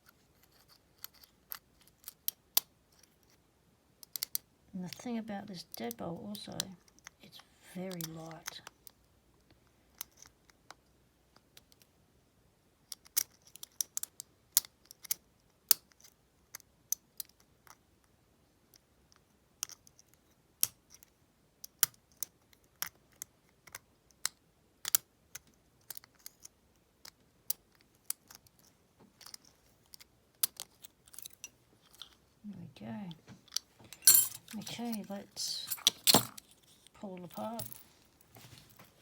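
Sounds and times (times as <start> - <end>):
lock pick clicking on pins: 4.0 - 4.5, 19.6 - 32.2, 33.5 - 37.8.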